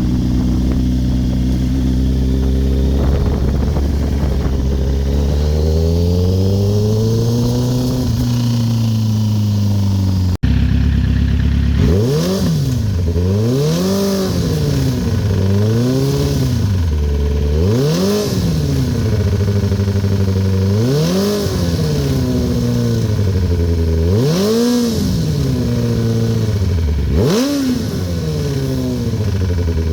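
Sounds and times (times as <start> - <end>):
motorcycle engine revving: 0.0 - 29.9
engine knocking: 10.0 - 11.8.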